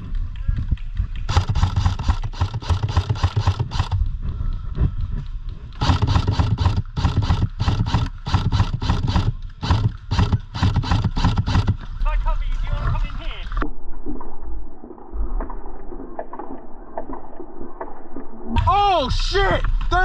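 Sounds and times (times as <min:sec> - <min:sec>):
running footsteps: 0:00.0 - 0:13.6
gear rattling: 0:01.2 - 0:04.1, 0:05.6 - 0:12.0.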